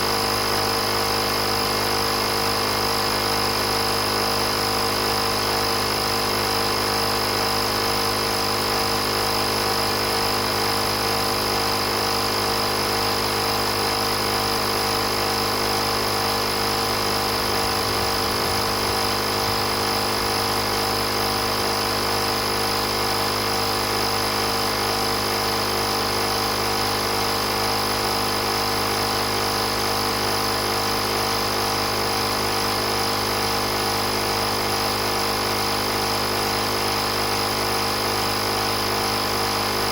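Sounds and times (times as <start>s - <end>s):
air compressor humming: 12.7s - 28.5s.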